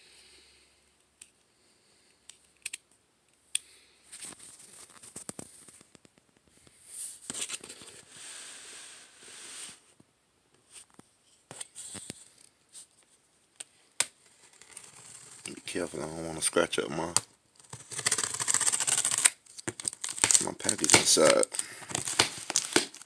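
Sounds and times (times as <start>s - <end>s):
cardboard box scraping and tearing: 17.6s - 19.3s.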